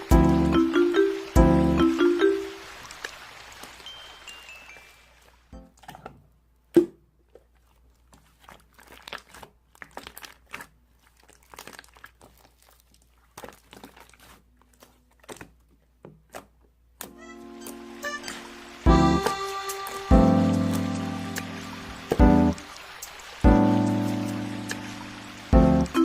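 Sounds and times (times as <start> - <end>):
slime squishing and popping: 8.2 - 15.6.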